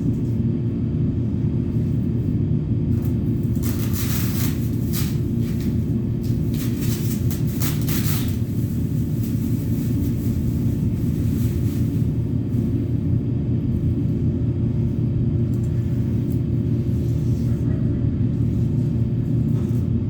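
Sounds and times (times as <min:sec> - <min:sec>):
machinery rumbling: 0:00.0 - 0:20.0.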